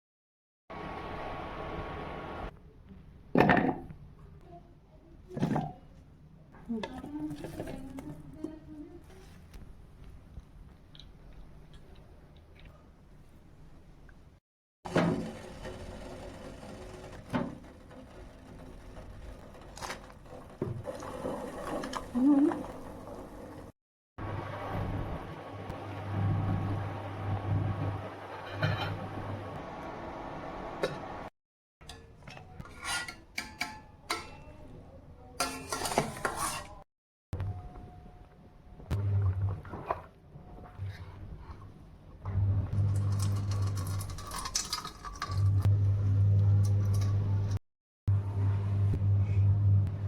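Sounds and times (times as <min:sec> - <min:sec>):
kitchen utensils clattering on dishes: 0:31.8 - 0:34.6, 0:35.4 - 0:36.8.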